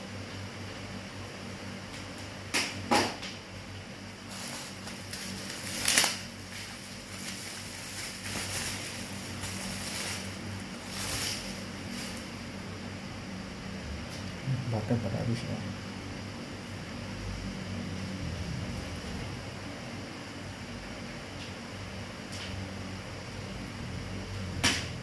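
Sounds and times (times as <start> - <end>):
fan humming: 0.0 - 25.0
soft rustling: 6.4 - 12.4.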